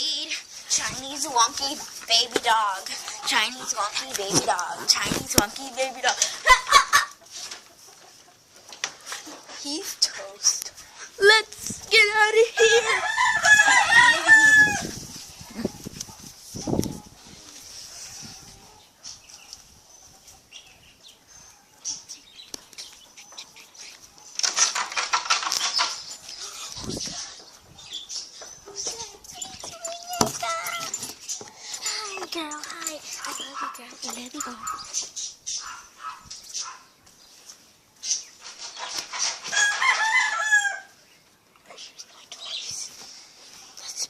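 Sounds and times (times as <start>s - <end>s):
birds chirping: 11.9s - 39.4s, 41.0s - 44.0s.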